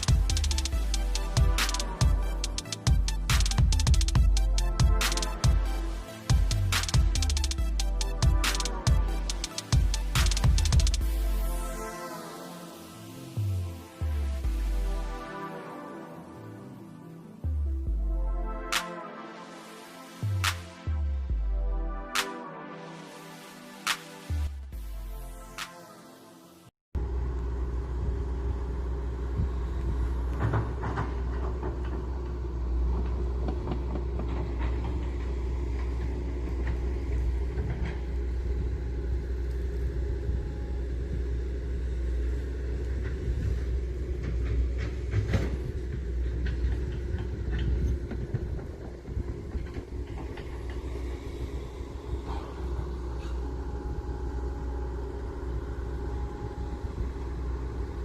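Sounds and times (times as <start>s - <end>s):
diesel engine low rumble: 0.0s - 18.8s, 20.2s - 22.2s, 27.0s - 58.0s.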